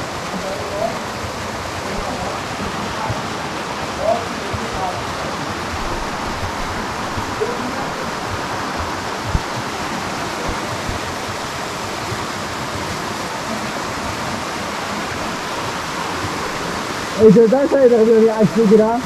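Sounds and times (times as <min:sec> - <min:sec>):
waterfall rushing and splashing: 0:00.0 - 0:19.0
low thumps: 0:05.7 - 0:11.4.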